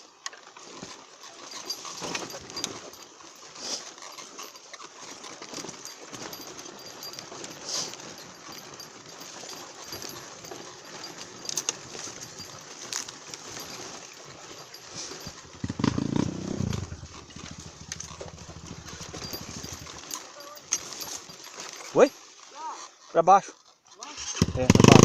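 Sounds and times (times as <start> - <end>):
motorcycle engine revving and idling: 14.6 - 22.1, 24.1 - 25.0.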